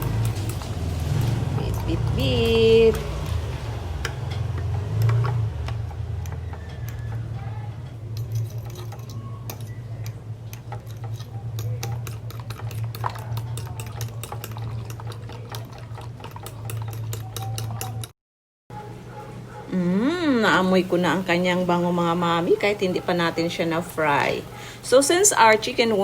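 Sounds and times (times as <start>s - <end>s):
whisk clicking against bowl: 8.2s - 18.1s.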